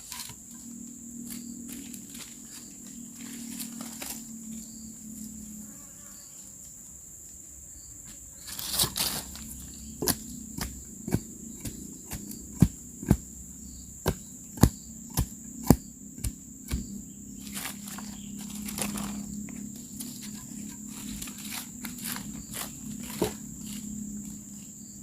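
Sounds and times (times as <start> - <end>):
crickets droning: 0.0 - 25.0
rustling scrape: 8.4 - 9.7, 17.4 - 24.3
bamboo being struck: 14.0 - 16.9.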